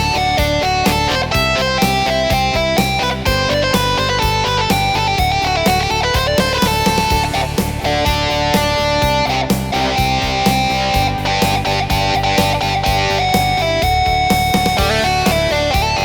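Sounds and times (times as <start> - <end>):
bass and drum accompaniment: 0.0 - 16.0
electric guitar tones on keyboard: 0.0 - 16.0.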